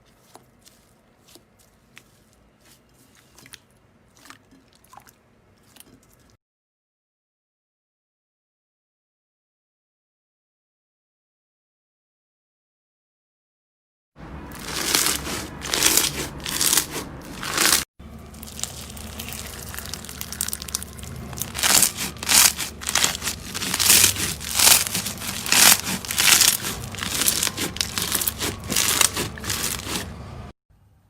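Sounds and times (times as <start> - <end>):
slime squished by hand: 14.5 - 17.8, 18.4 - 30.1.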